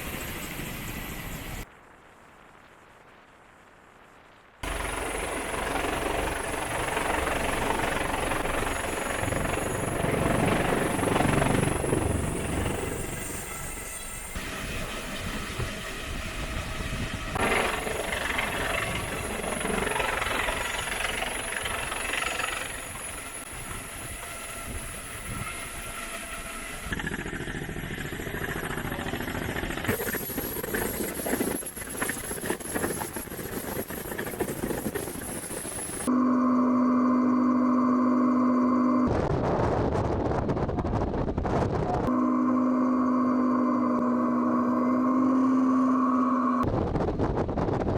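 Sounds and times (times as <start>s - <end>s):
wind rumble: 0.0s - 36.1s, 39.1s - 42.1s, 46.5s - 47.9s
steady engine noise: 4.6s - 39.4s, 42.0s - 47.8s
thin high whine: 8.0s - 27.2s, 42.1s - 46.7s.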